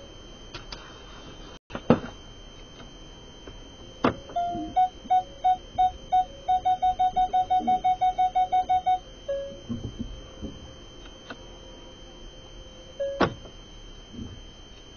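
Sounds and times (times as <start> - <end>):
parking sensor beeps: 4.0 - 10.7, 12.6 - 14.8.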